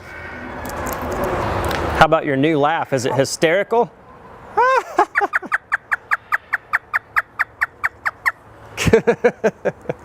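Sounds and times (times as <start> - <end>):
parrot mimicking laughter: 4.5 - 8.4.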